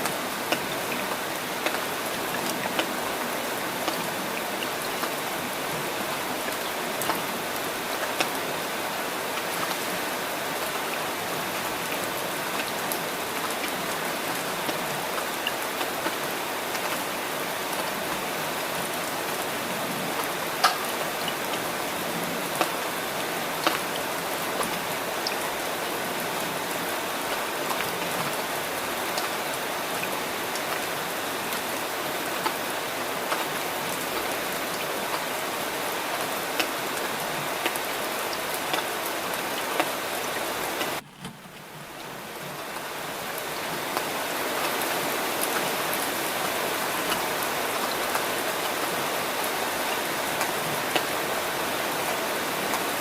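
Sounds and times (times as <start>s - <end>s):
steady rain hissing: 0.0s - 53.0s
raindrops ticking: 20.2s - 21.7s, 39.7s - 43.0s.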